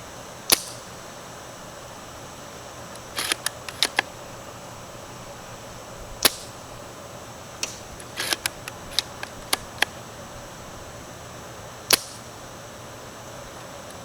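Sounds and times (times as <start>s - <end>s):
airsoft rifle shots: 0.5s - 0.9s, 3.0s - 4.2s, 6.2s - 6.7s, 7.6s - 10.0s, 11.8s - 12.3s
rifle bolt clicks and clacks: 3.0s - 4.1s, 7.6s - 10.0s.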